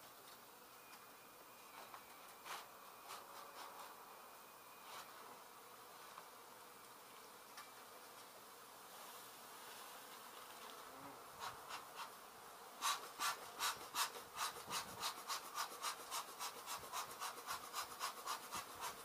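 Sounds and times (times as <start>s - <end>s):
bees buzzing: 0.2s - 19.0s
bee smoker bellows puffing: 10.7s - 19.0s.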